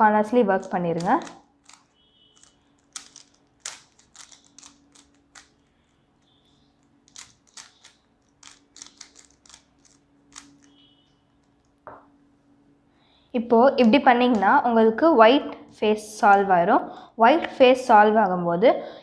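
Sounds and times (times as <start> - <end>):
puzzle cube plastic clicks: 0.6 - 10.8.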